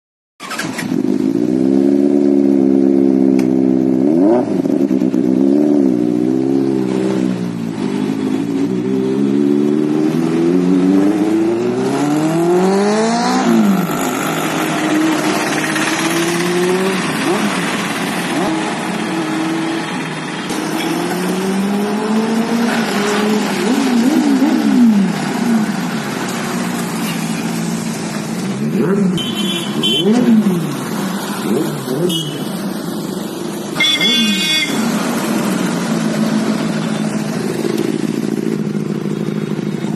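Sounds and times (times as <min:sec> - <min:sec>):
motorcycle engine revving: 0:00.4 - 0:39.9.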